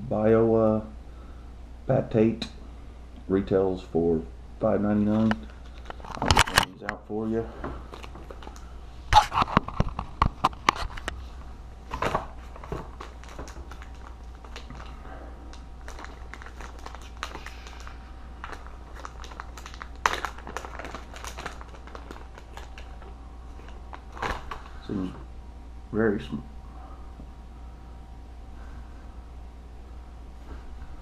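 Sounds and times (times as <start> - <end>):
faint steady hum: 0.0 - 31.0
plastic packaging crinkling: 5.0 - 6.9, 7.8 - 25.1.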